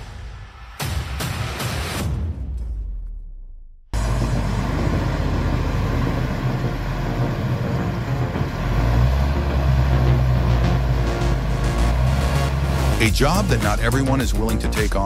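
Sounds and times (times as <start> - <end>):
large engine running: 4.0 - 14.8.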